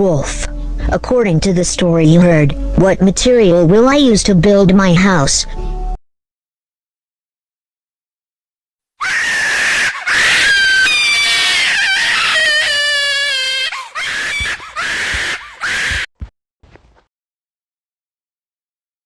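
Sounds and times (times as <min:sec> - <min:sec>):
shrill screaming: 0:09.0 - 0:16.1.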